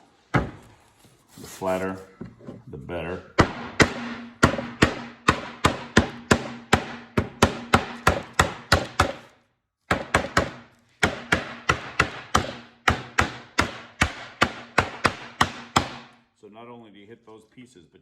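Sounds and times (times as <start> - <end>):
hammer tapping wood: 3.4 - 9.3, 9.9 - 16.1.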